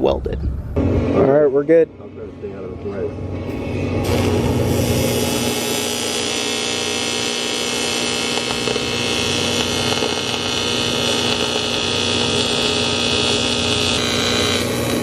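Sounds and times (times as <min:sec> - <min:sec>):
power saw cutting pipe: 0:04.0 - 0:15.0.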